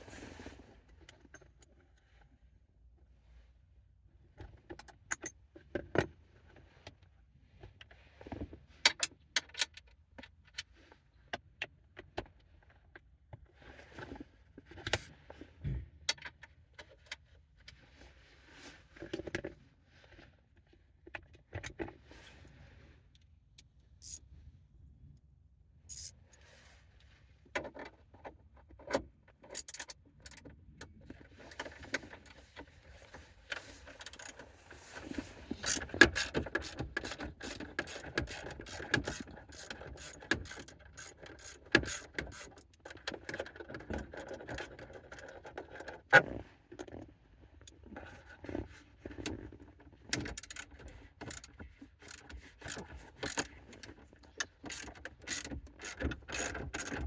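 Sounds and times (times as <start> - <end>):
hand tools clicking and scraping: 33.5 - 42.6, 50.4 - 57.0.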